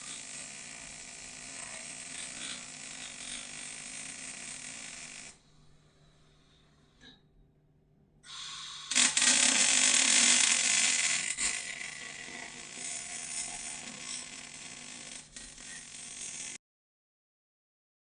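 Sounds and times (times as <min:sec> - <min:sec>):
welder arc crackling and hissing: 0:00.0 - 0:05.4, 0:08.3 - 0:16.6.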